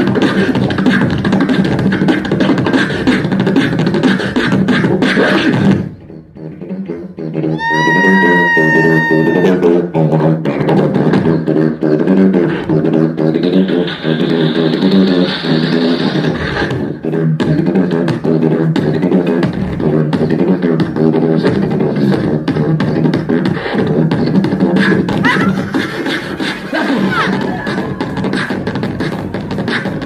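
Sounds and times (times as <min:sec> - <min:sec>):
buzzing vocal bass line: 0:00.0 - 0:26.0, 0:26.6 - 0:29.6
beatboxing: 0:00.0 - 0:30.0
whistle-like vocal tone: 0:06.0 - 0:10.1, 0:26.7 - 0:28.6.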